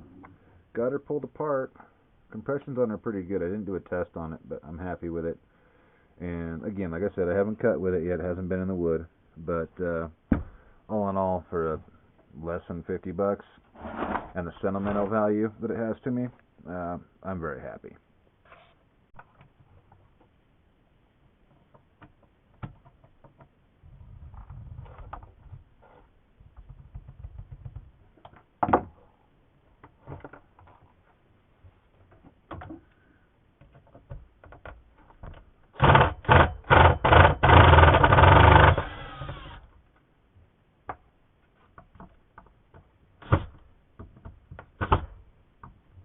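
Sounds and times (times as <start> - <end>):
power tool motor: 35.8 - 39.7.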